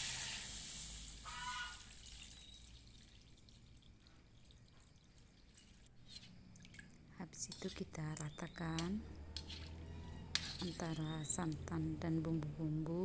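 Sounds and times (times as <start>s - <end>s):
liquid pouring into a wok: 0.0s - 6.8s.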